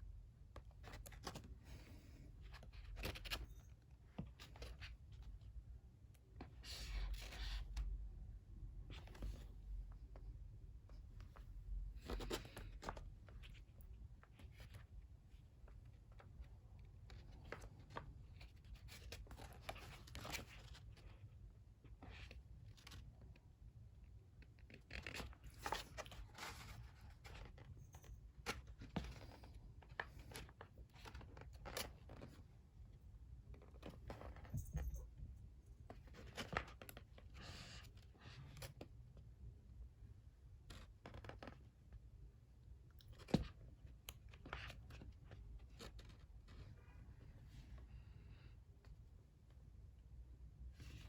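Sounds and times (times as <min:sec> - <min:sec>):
pages turning: 0:24.7 - 0:27.7.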